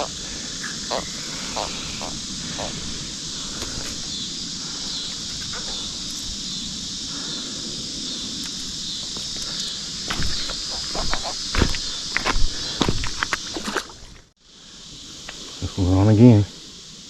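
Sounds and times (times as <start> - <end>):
steady outdoor background hiss: 0.0 - 17.0
sharp knocks: 10.1 - 13.7.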